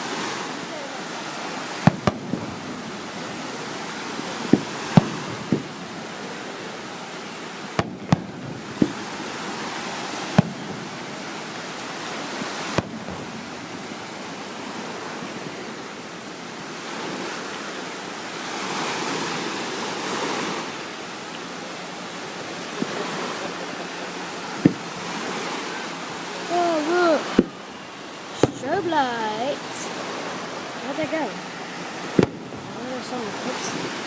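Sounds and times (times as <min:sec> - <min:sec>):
surf washing on shore: 0:00.0 - 0:34.0
fireworks bangs: 0:01.4 - 0:16.2, 0:21.6 - 0:34.0.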